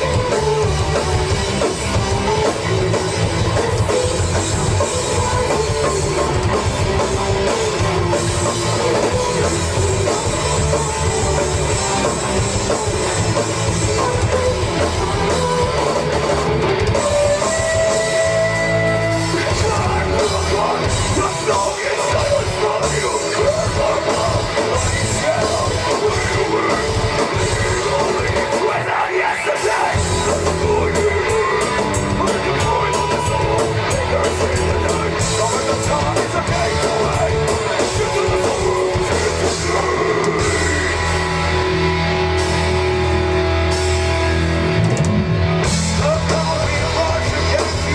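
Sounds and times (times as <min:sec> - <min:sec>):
sung and yelled vocals: 0:00.0 - 0:42.4, 0:45.6 - 0:47.9
distorted electric guitars: 0:00.0 - 0:47.9
drum kit: 0:00.0 - 0:47.9
live rock band playing: 0:00.0 - 0:47.9.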